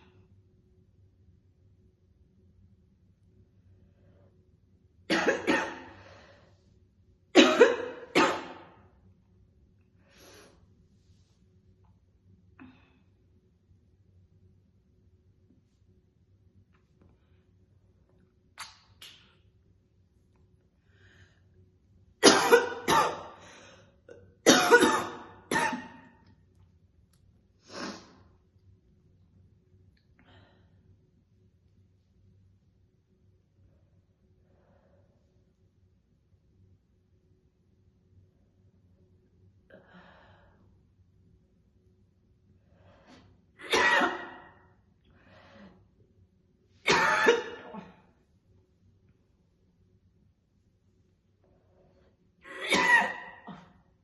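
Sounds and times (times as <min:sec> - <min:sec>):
woman coughing harshly: 0:05.1 - 0:06.0, 0:07.4 - 0:08.7, 0:22.2 - 0:23.4, 0:24.4 - 0:26.2, 0:43.6 - 0:44.5, 0:46.9 - 0:48.0, 0:52.5 - 0:53.8
woman breathing: 0:05.9 - 0:06.8, 0:09.9 - 0:11.2, 0:20.8 - 0:21.6, 0:23.3 - 0:24.1, 0:30.1 - 0:31.0, 0:39.7 - 0:40.9, 0:42.5 - 0:43.6, 0:45.0 - 0:46.0
soft breath: 0:45.0 - 0:46.0.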